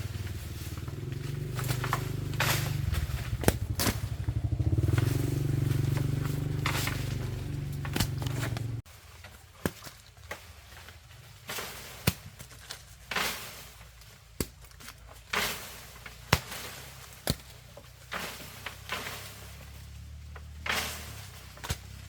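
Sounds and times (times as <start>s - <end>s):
short rustling swishes: 0.0s - 8.8s
sharp clicks and knocks: 0.9s - 4.3s, 4.9s - 8.8s.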